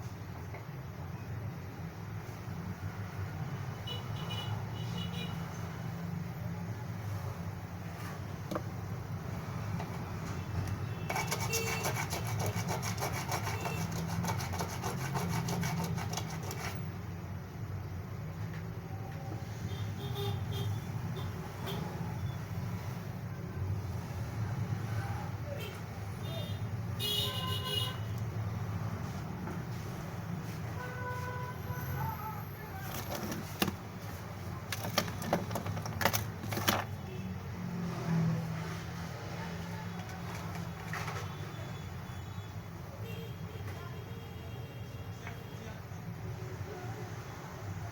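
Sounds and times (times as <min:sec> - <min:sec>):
fast scraping strokes: 0:11.0 - 0:16.9.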